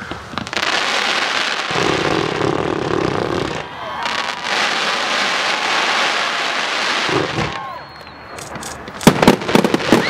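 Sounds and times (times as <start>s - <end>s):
firework whistle: 0.0s - 10.0s
fireworks crackling: 0.0s - 10.0s
sharp firework bangs: 9.0s - 10.0s.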